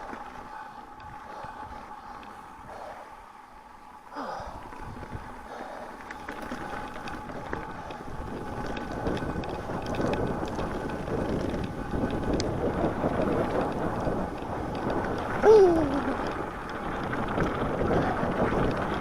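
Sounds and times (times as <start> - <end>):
bike tyres rumbling on trail: 0.0 - 19.0
small clicks and rattles: 4.5 - 19.0.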